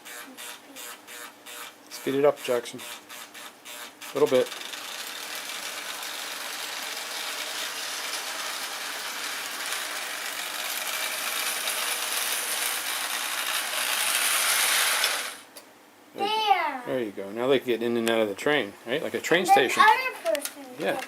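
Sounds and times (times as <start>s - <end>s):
toy train motor whirring: 0.0s - 15.5s.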